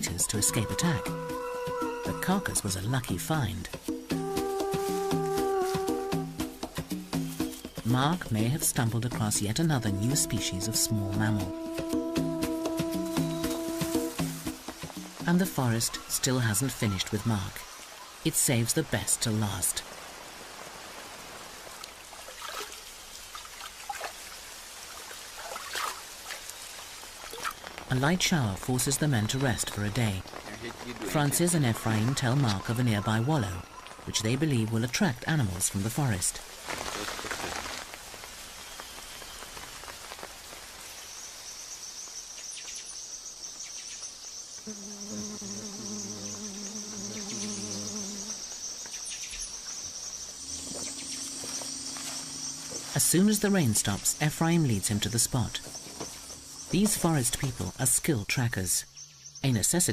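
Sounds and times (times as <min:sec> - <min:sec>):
water drips: 0:00.0 - 0:32.8
light rain falling: 0:00.0 - 0:59.0
trickling water: 0:12.6 - 0:43.6
high-pitched insect trill: 0:40.9 - 0:54.7.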